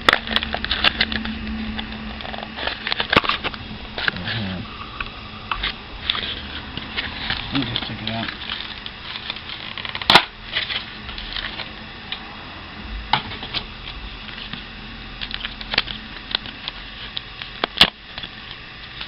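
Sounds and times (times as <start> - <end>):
foil wrapper crinkling: 5.6 - 11.8.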